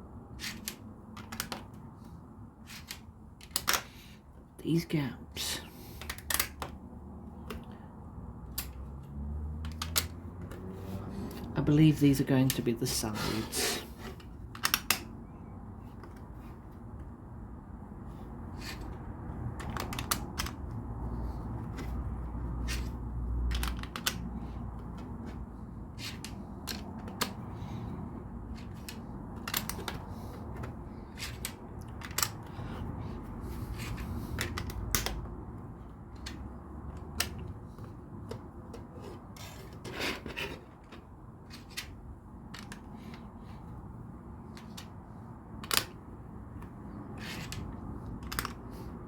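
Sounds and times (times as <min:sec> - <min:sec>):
plastic bricks clicking: 0:00.4 - 0:01.8, 0:02.7 - 0:04.0, 0:06.0 - 0:06.8, 0:14.2 - 0:15.1, 0:19.6 - 0:20.6, 0:23.5 - 0:24.2, 0:28.6 - 0:32.6, 0:33.9 - 0:35.2.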